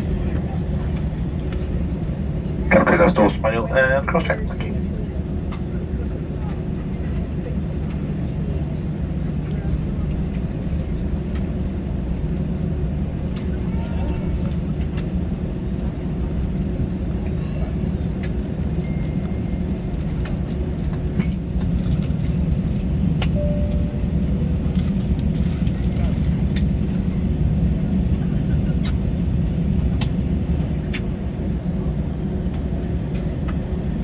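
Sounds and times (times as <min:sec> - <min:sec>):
low aircraft cabin drone: 0:00.0 - 0:34.0
faint steady hum: 0:02.7 - 0:04.9
voices: 0:02.7 - 0:04.9.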